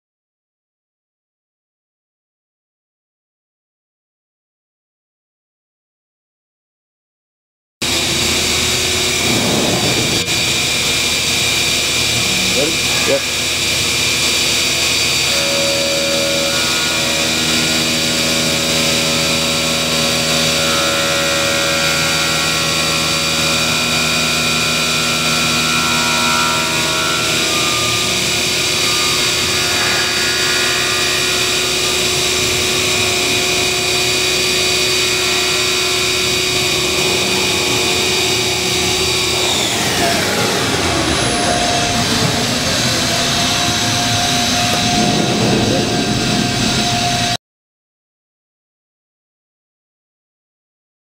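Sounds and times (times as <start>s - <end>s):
machine cutting metal: 7.8s - 47.4s
spindle whine: 7.8s - 47.4s.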